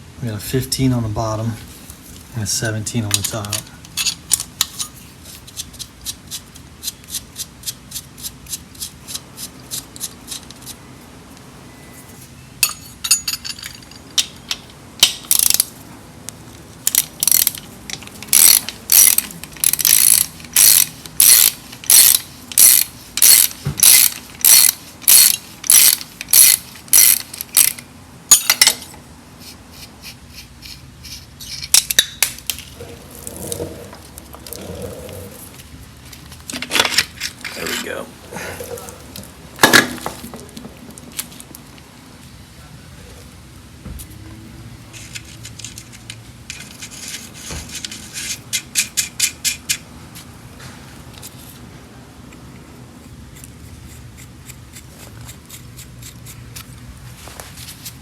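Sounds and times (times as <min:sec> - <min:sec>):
socket ratchet clicking: 0:14.2 - 0:15.7, 0:16.8 - 0:27.8.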